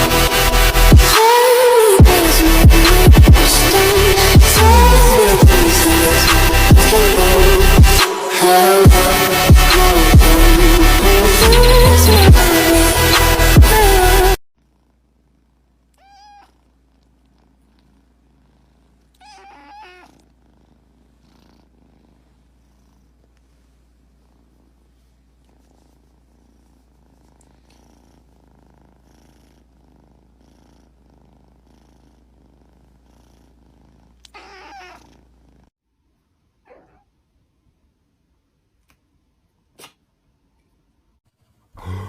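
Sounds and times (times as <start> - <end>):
cat purring: 14.6 - 35.7
cat squeaky cries: 16.0 - 16.5, 19.2 - 20.1, 34.4 - 35.0.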